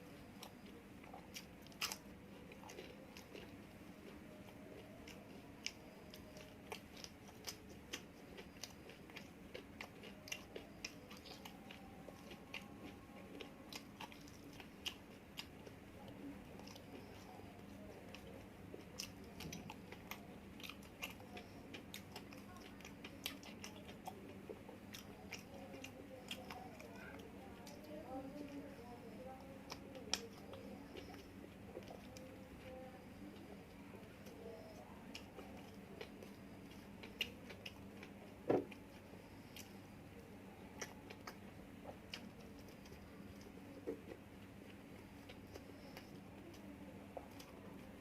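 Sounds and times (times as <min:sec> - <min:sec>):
person chewing crunchy food: 0:00.1 - 0:27.8, 0:34.2 - 0:39.8, 0:40.7 - 0:48.0.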